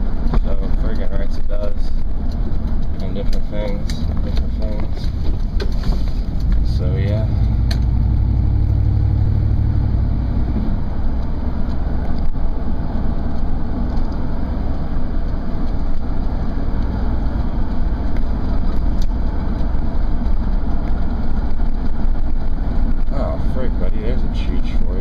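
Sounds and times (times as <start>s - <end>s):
road noise: 0.0s - 25.0s
truck engine drone: 0.0s - 25.0s.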